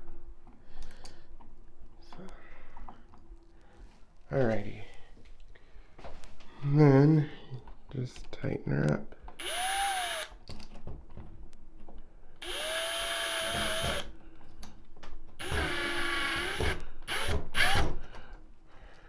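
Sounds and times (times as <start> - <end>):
electric drill whining: 9.4 - 10.3, 12.4 - 14.1, 15.4 - 17.8.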